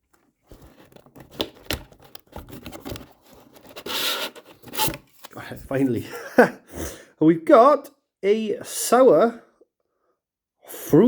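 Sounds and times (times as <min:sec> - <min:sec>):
scratches and knocks: 0:00.5 - 0:05.1
cardboard tearing: 0:00.5 - 0:05.4.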